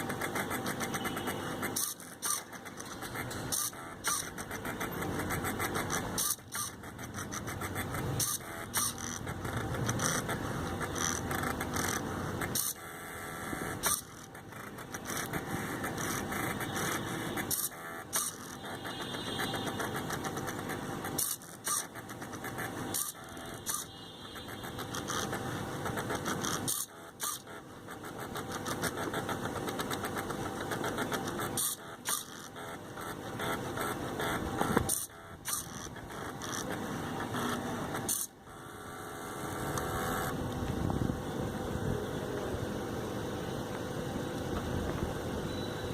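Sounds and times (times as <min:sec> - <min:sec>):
sharp clicks: 0:13.7 - 0:38.4.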